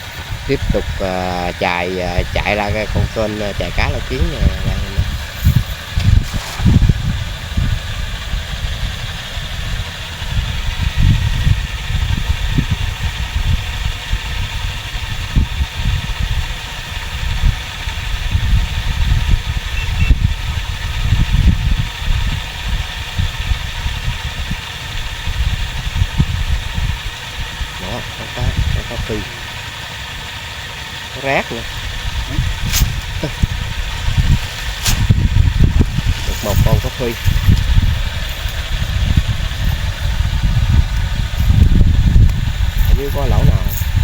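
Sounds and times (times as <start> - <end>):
small engine running: 0.0 - 44.0
low rumble: 1.6 - 16.4, 31.2 - 44.0.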